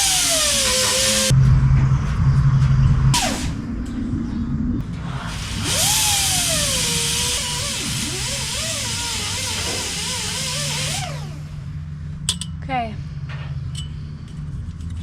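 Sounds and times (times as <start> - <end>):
cut-off wheel tool hissing: 0.0 - 1.3.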